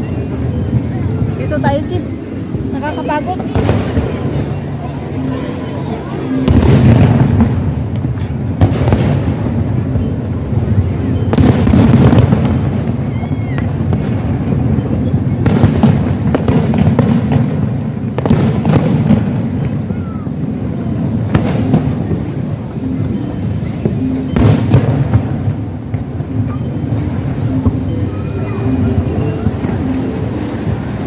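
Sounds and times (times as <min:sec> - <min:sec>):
background music: 0:00.0 - 0:11.8, 0:20.4 - 0:31.0
fireworks bangs: 0:00.0 - 0:31.0.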